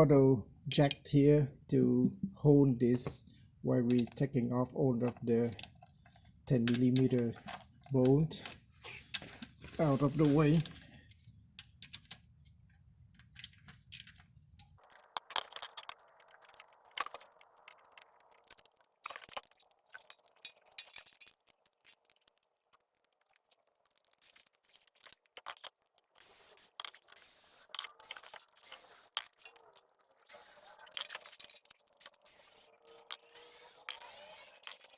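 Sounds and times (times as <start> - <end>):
hand tools clicking on metal: 5.4 - 5.9, 6.5 - 8.5, 30.9 - 34.9.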